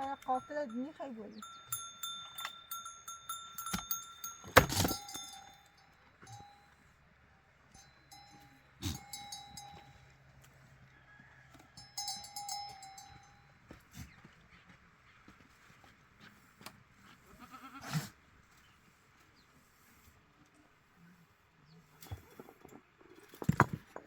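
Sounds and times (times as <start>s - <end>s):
livestock bells clinking: 0.0s - 10.4s, 11.6s - 13.9s.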